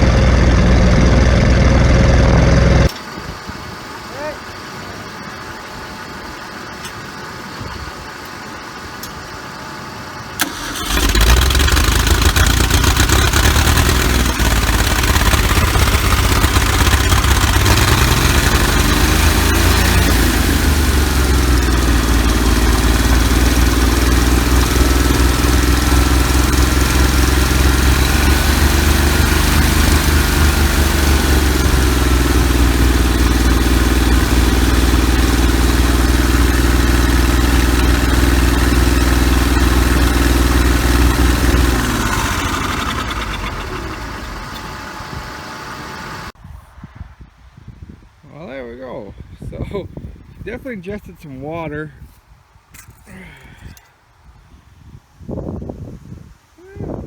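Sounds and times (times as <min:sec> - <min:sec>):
old gasoline engine running: 0:10.4 - 0:46.3.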